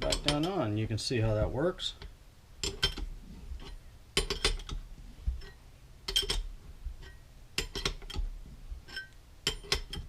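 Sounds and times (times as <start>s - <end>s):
wrenches clinking on nuts: 0.0s - 0.6s, 2.6s - 4.8s, 5.4s - 8.2s, 8.9s - 10.0s.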